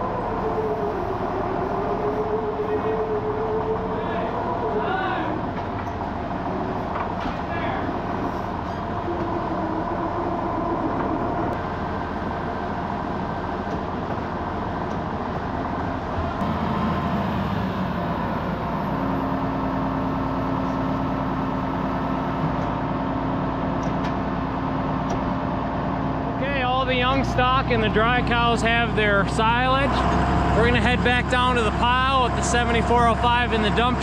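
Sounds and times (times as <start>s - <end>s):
farm machinery engine running: 0.0s - 34.0s.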